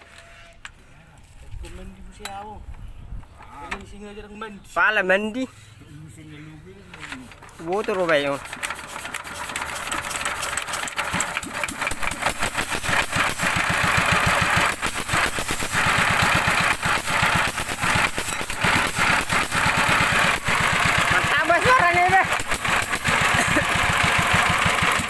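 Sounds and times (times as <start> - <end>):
diesel engine knocking: 9.2 - 25.0.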